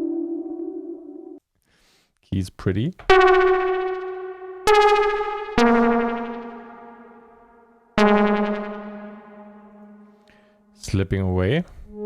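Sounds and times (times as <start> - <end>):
synthesizer keys notes: 3.1 - 10.4.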